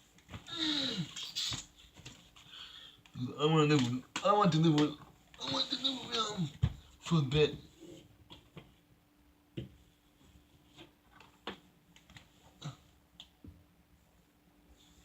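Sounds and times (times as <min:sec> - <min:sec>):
faint steady hum: 0:00.0 - 0:15.0
faint clicks and taps: 0:03.0 - 0:05.4, 0:13.1 - 0:13.6.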